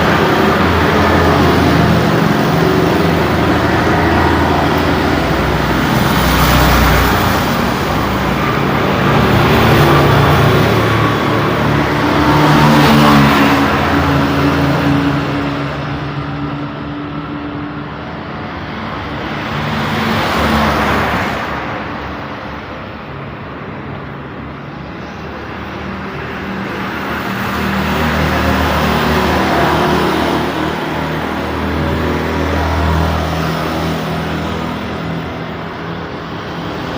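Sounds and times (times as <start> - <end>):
heavy engine low hum: 0.0 - 19.0
vehicles passing: 0.0 - 36.9.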